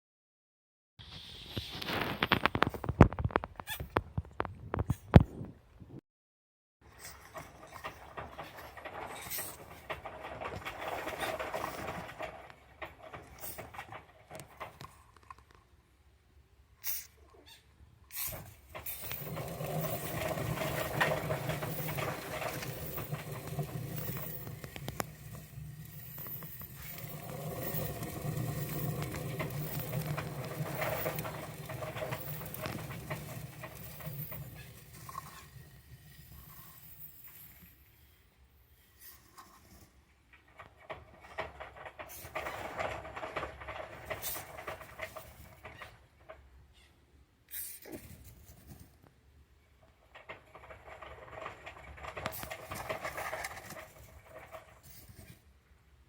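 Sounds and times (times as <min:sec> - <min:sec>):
hamsters scrabbling in cage: 0:07.0 - 0:15.0, 0:18.2 - 0:35.6, 0:50.2 - 0:55.4.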